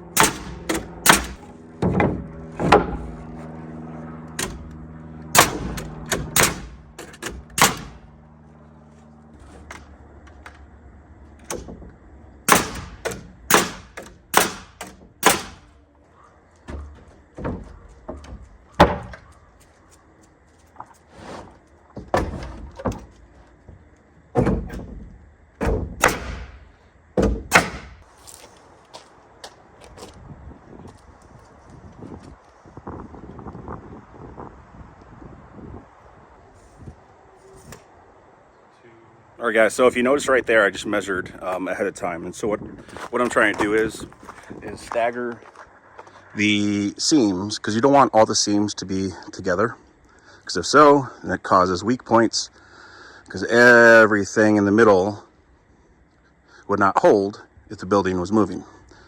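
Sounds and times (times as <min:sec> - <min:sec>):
sharp knocks and bangs: 0:00.0 - 0:03.5, 0:04.3 - 0:08.2, 0:11.4 - 0:15.8, 0:16.6 - 0:19.3, 0:22.0 - 0:28.0
steady low hum: 0:00.0 - 0:59.0.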